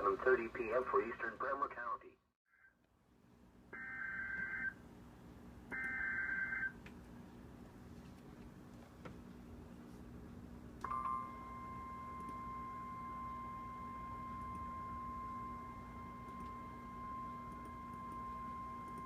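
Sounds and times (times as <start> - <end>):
faint radio hum: 0.0 - 2.2
steady high alarm tone: 5.7 - 6.7, 10.9 - 19.0.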